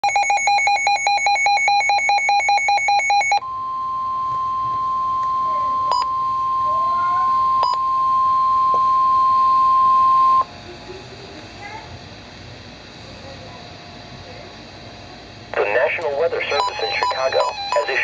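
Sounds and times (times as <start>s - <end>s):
rapid electronic alert beeping: 0.0s - 3.4s, 15.6s - 18.0s.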